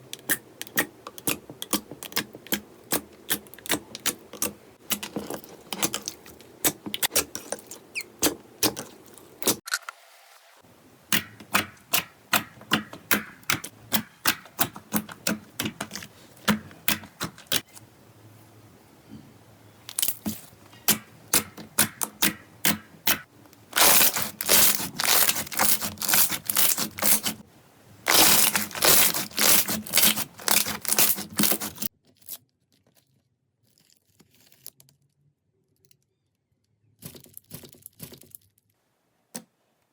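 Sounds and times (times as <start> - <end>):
slime crackling and popping: 23.8 - 27.4, 28.1 - 31.9.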